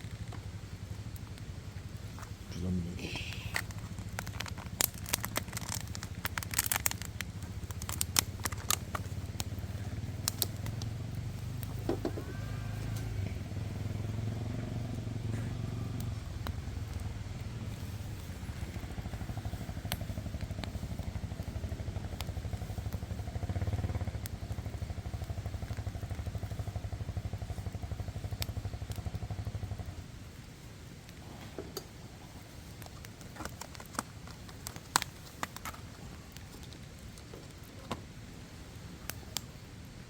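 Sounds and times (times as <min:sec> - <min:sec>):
sharp clicks and crackles: 0:00.0 - 0:30.0, 0:31.0 - 0:38.3
engine idling: 0:00.0 - 0:32.6.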